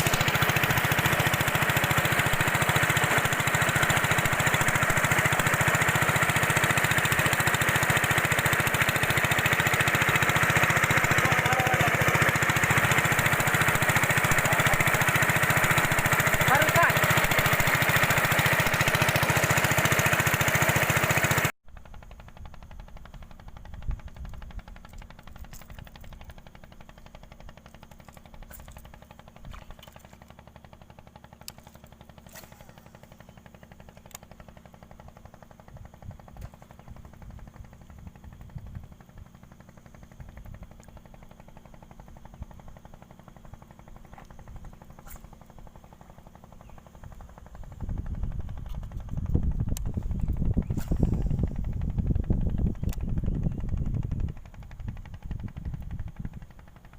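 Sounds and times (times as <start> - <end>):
small engine running loudly: 0.0 - 56.9.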